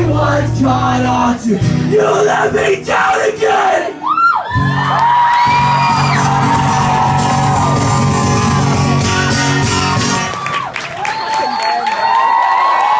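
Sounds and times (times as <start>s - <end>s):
crowd whooping and cheering: 3.9s - 12.9s.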